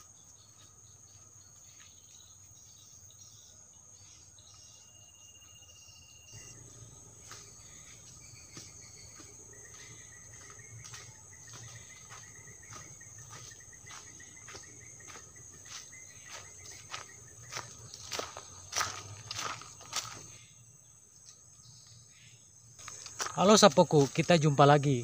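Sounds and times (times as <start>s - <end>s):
insects droning: 0.0s - 25.0s
rapid pulsing insect trill: 0.0s - 25.0s
steps on dry leaves: 6.4s - 20.4s, 22.8s - 24.5s.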